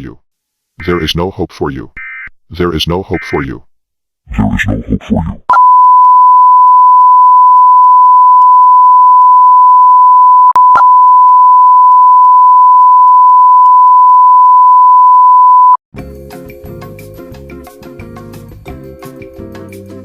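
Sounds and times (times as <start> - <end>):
high-pitched beep tone: 5.5 - 15.8.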